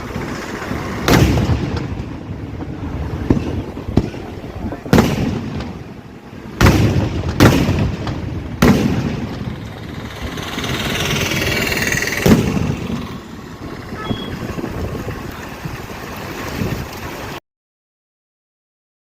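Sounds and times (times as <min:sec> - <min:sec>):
firework booms with echo: 0:01.0 - 0:09.6, 0:12.2 - 0:13.0.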